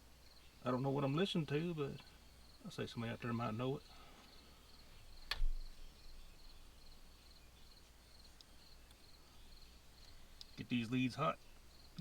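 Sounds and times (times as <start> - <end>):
crickets chirping: 2.1 - 12.0
sharp click with low thump: 5.3 - 5.7.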